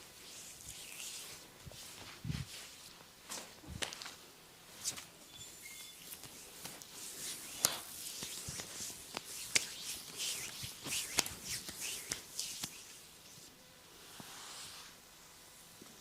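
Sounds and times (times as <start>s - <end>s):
hands rubbing skin: 0.0s - 5.1s, 5.8s - 13.5s
sharp slaps on skin: 7.6s - 12.9s.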